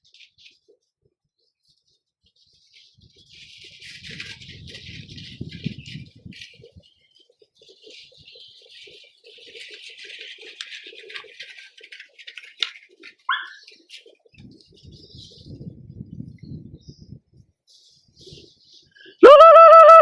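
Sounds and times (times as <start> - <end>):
wild birds calling and chirping: 13.1 - 15.5
sharp falling bird call: 13.3 - 13.6.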